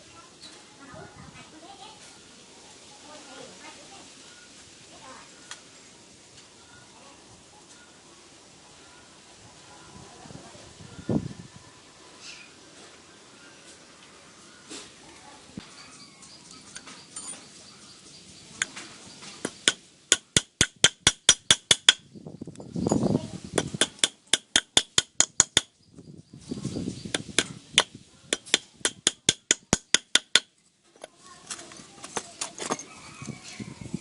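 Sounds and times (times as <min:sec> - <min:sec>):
hammer striking metal: 0:19.4 - 0:22.0, 0:23.6 - 0:25.7, 0:27.2 - 0:30.5.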